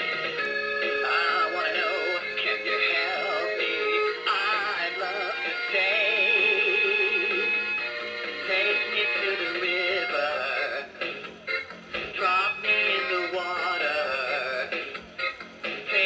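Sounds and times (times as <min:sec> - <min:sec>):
synthetic male singing voice: 0:00.8 - 0:07.5, 0:08.4 - 0:11.0, 0:12.0 - 0:14.9, 0:15.8 - 0:16.0.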